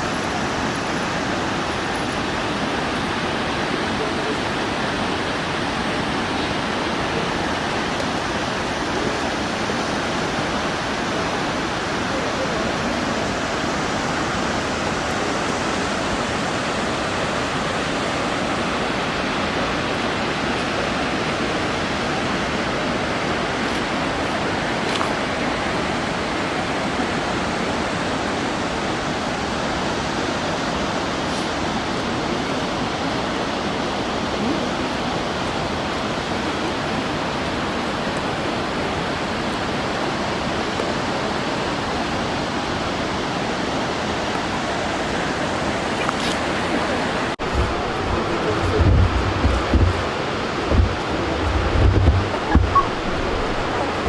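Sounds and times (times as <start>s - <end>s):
waterfall rushing: 46.5s - 54.0s.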